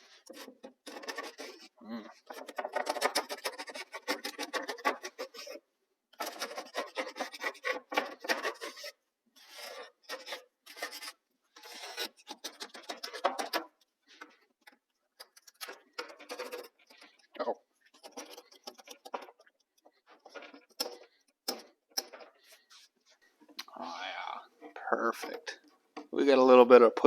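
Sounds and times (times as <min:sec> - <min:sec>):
scraping glue off wood: 0:00.0 - 0:05.6, 0:06.2 - 0:22.9.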